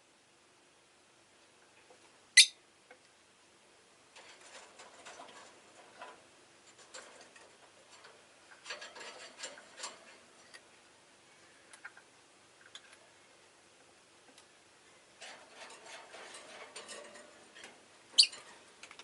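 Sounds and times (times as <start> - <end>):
bird sharp chirp: 2.4 - 2.6.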